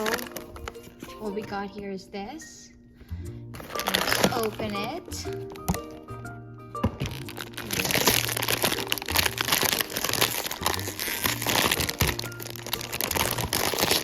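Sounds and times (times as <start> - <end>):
packaging crinkling: 0.0 - 1.4, 3.6 - 6.1, 6.8 - 14.0.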